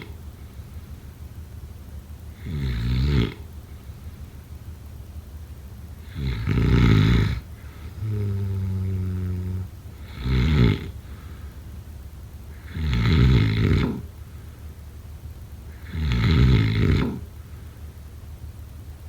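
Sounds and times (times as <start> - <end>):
steady low hum: 0.0 - 19.0
loud rasping snores: 2.3 - 3.5, 6.0 - 11.3, 12.5 - 14.1, 15.7 - 17.3.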